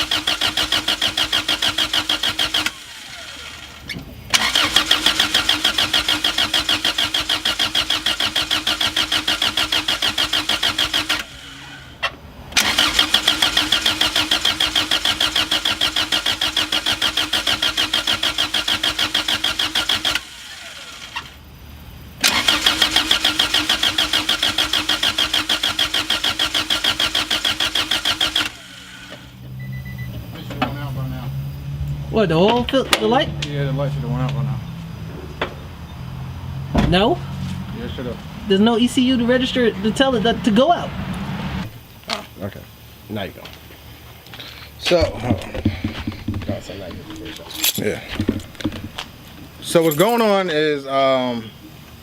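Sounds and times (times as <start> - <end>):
engine cranking on starter: 0.0 - 31.6, 44.4 - 52.0.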